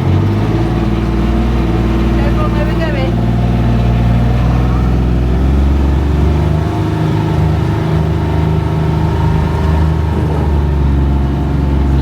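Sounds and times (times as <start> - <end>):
vehicle engine humming: 0.0 - 12.0.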